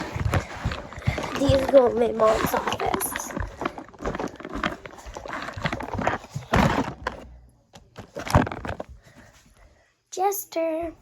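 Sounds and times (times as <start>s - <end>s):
scraping rustle: 0.0s - 7.3s
buckets knocking and clattering: 0.0s - 9.3s.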